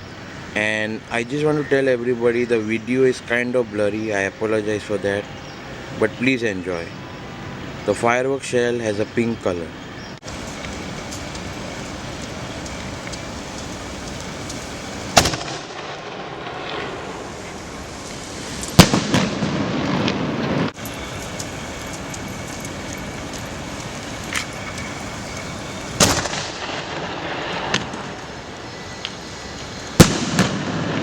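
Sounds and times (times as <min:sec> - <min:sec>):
steady hiss: 0:10.2 - 0:19.6, 0:20.7 - 0:31.0
firework shells banging: 0:10.2 - 0:31.0
rumbling echo: 0:10.2 - 0:31.0.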